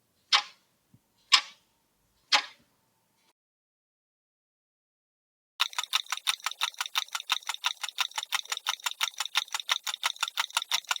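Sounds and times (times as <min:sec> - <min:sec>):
clock ticking fast: 0:05.6 - 0:11.0.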